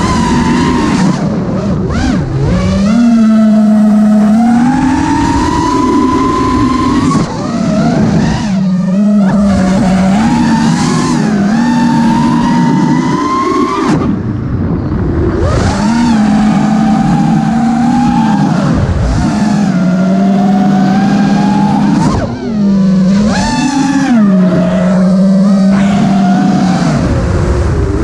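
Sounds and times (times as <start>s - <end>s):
drone motors whining: 0.0s - 28.0s.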